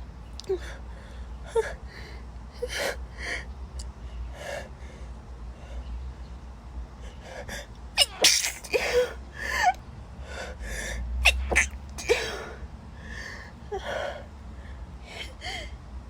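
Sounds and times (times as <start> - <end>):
woman sneezing: 8.0 - 9.1, 11.2 - 12.4.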